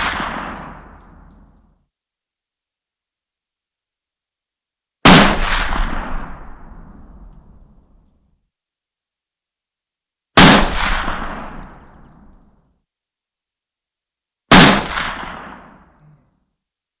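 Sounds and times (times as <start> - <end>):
rifle shots with rolling echo: 0.0 - 1.5, 5.0 - 8.0, 10.4 - 12.4, 14.5 - 16.0.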